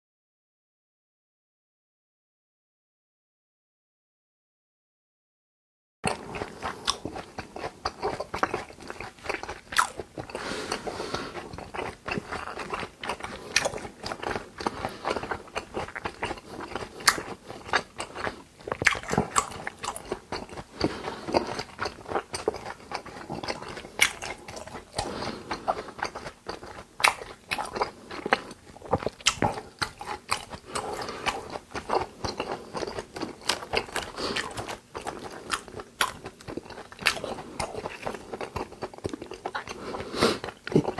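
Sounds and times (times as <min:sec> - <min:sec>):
person chewing wetly: 0:06.1 - 0:40.9
mouth clicks and smacks: 0:18.6 - 0:20.6, 0:23.4 - 0:25.1, 0:26.0 - 0:32.4.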